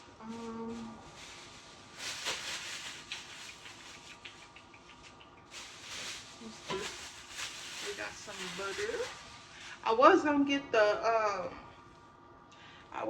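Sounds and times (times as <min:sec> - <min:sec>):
packaging rustling: 0:00.8 - 0:04.4, 0:05.5 - 0:09.7.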